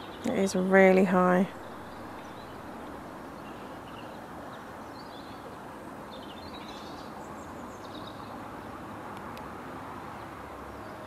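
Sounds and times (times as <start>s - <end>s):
small birds chirping: 0.0s - 8.8s
outdoor background rumble: 0.0s - 11.0s.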